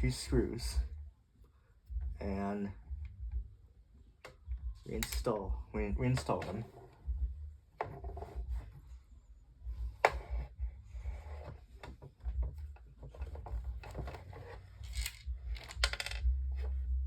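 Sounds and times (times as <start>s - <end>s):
hands handling screws and plastic parts: 13.2s - 16.3s.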